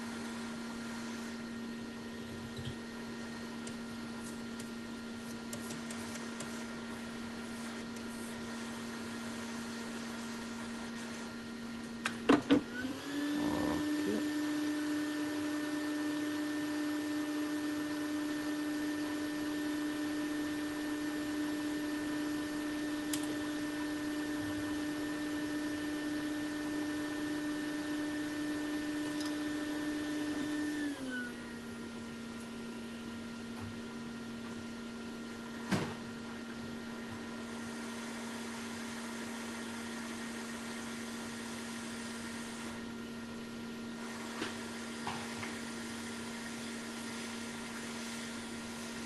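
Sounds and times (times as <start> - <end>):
blower whining: 0.0 - 32.3.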